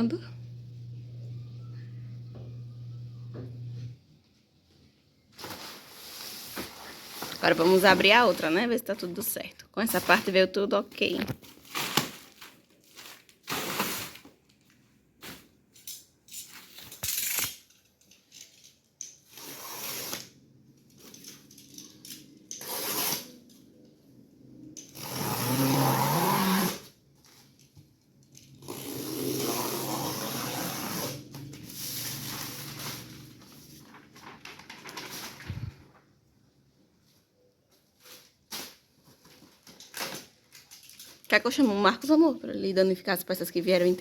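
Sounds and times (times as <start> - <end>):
packaging rustling: 11.0 - 15.6, 31.4 - 36.0
tape and cardboard tearing: 13.4 - 14.4, 16.7 - 17.7, 19.2 - 20.4, 22.5 - 23.5, 24.8 - 27.0, 28.6 - 33.2.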